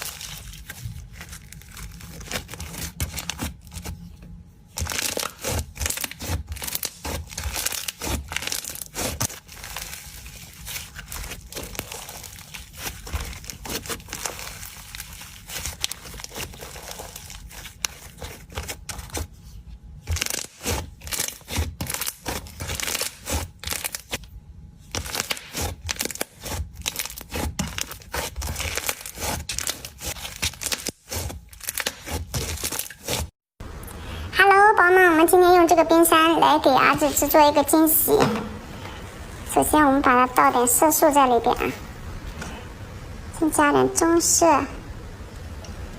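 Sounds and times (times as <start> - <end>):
slime crackling and popping: 4.7 - 19.3, 20.0 - 24.2, 24.9 - 33.3.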